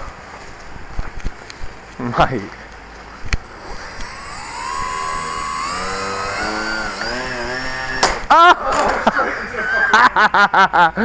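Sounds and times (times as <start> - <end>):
electric motor whine rising: 3.4 - 8.3
high steady electronic whine: 3.4 - 8.3
sharp click: 3.5 - 8.3.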